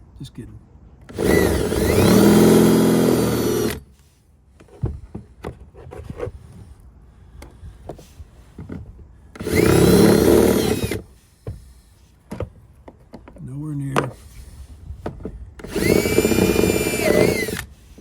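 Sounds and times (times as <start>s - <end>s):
power drill drilling plastic: 1.1s - 3.8s, 9.4s - 11.0s, 15.6s - 17.8s
handling clicks and knocks: 12.2s - 14.2s.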